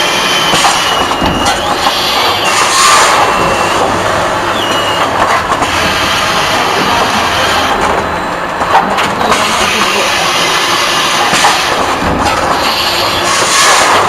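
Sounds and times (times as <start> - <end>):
train running on rails: 0.0 - 14.0.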